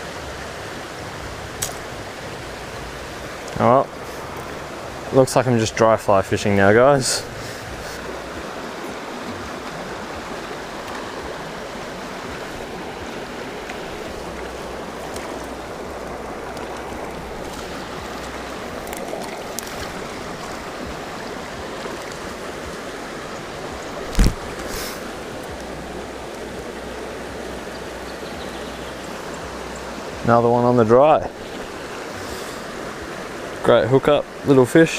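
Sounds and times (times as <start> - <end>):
stream water rushing: 0.0 - 34.9.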